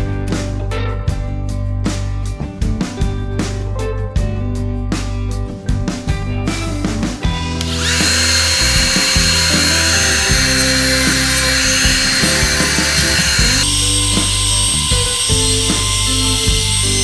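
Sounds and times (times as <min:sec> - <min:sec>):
guitar music: 0:00.0 - 0:17.0
power tool whining: 0:07.4 - 0:17.0.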